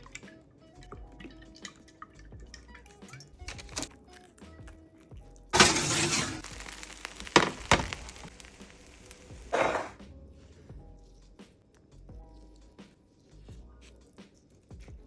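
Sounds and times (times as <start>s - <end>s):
background music: 0.0s - 15.0s
kitchenware clattering: 5.6s - 10.0s.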